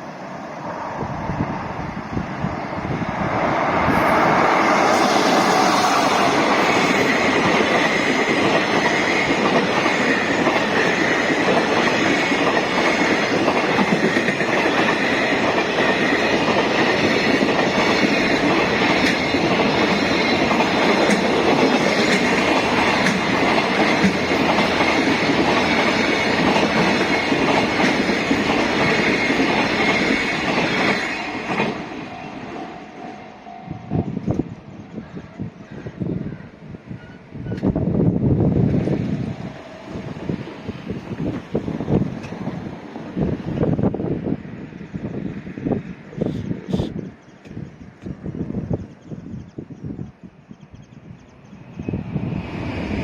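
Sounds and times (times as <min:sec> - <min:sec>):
freight train rumbling: 0:00.0 - 0:53.0
wheels clicking over rail joints: 0:04.7 - 0:32.0.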